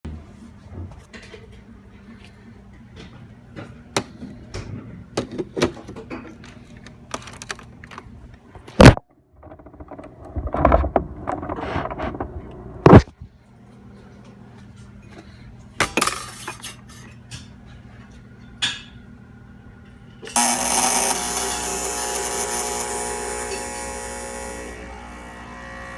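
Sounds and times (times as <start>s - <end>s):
espresso machine buzzing: 20.3s - 25.9s.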